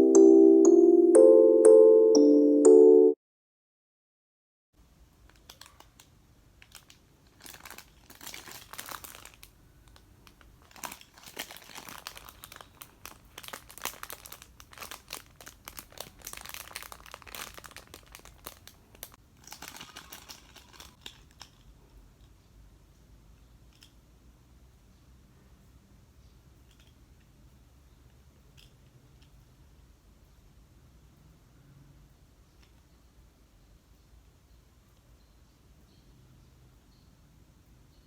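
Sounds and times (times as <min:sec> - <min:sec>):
packaging wrapper crinkling: 0:05.3 - 0:21.6.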